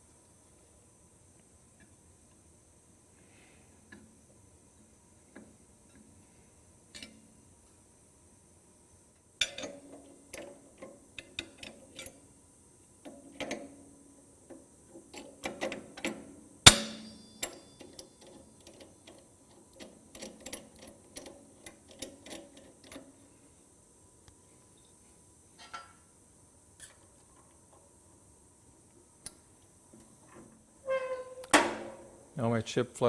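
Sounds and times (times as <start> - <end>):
loud metallic clank: 16.7 - 17.3.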